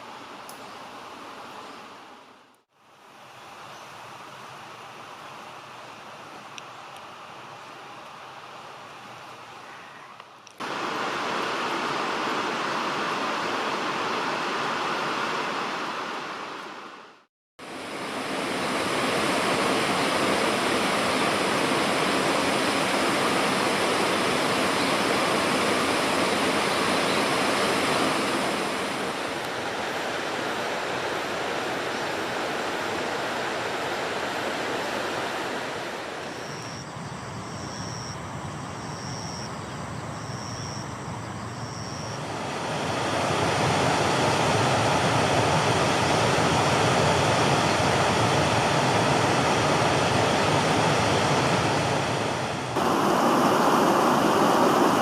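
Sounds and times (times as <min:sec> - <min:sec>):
steady rushing noise: 0:10.6 - 0:36.5, 0:42.2 - 0:55.0.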